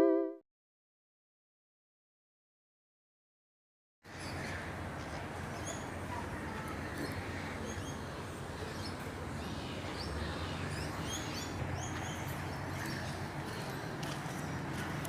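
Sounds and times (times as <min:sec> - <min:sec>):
small birds chirping: 0:04.1 - 0:14.8.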